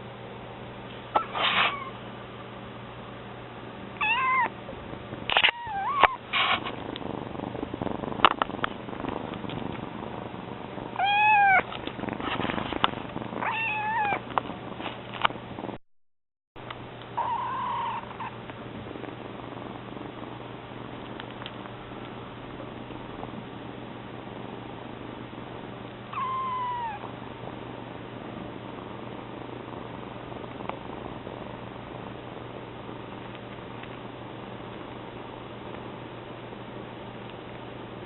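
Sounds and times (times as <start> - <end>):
kitten meowing: 1.2 - 2.0, 4.0 - 4.5, 5.3 - 6.2, 11.0 - 11.7, 13.4 - 14.2, 17.2 - 18.3, 26.1 - 27.1
cat purring: 4.0 - 14.9, 17.2 - 23.5, 26.1 - 32.2.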